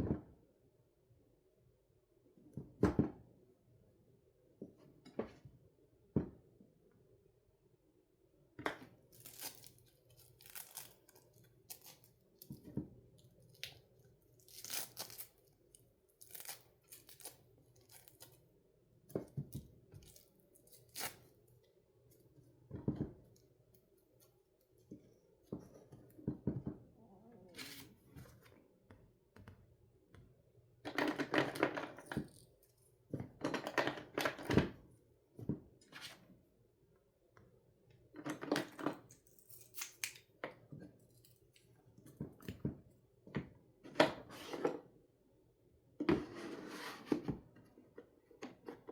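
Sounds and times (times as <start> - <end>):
velcro tearing apart: 9.2 - 12.1, 14.5 - 15.4, 16.2 - 18.3, 20.1 - 21.2.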